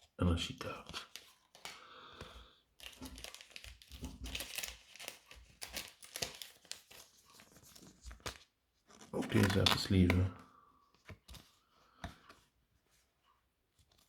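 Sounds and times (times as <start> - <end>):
plastic sleeves crinkling: 2.8 - 10.4.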